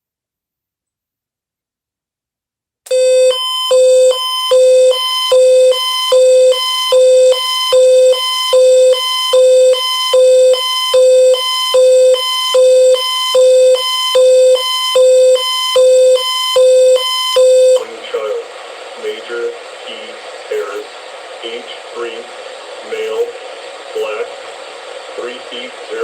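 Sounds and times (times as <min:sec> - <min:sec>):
pulsing buzzy alert beeps: 0:02.9 - 0:17.8.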